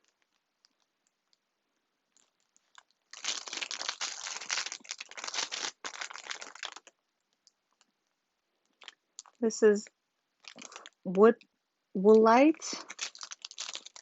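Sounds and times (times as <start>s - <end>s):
packaging crinkling: 2.1s - 7.0s, 10.4s - 11.1s, 12.8s - 14.0s.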